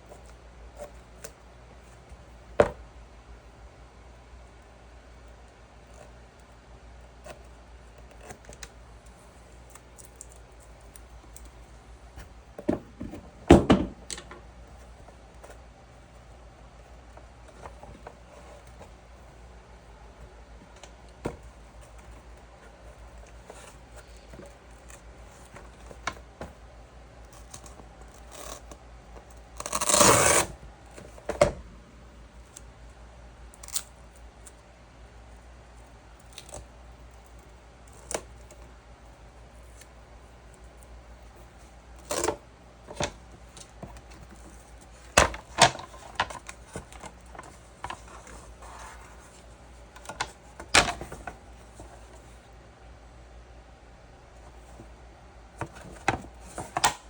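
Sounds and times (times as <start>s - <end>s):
scraping or tearing: 29.6s - 30.6s.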